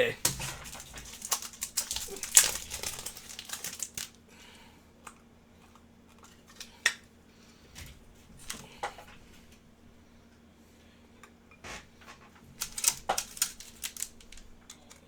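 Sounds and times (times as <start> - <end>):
cards and plastic sleeves rustling: 0.0 - 4.2, 12.5 - 15.0.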